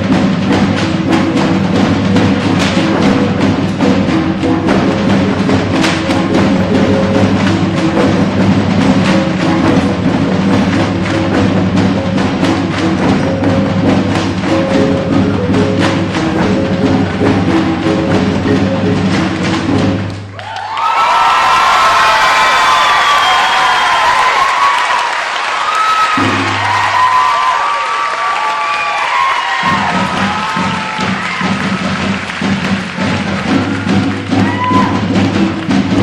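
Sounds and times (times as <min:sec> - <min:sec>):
percussive music with wooden clacks: 0:00.0 - 0:20.8, 0:26.0 - 0:27.6, 0:29.1 - 0:36.0
people clapping: 0:19.1 - 0:36.0
people cheering: 0:20.2 - 0:36.0.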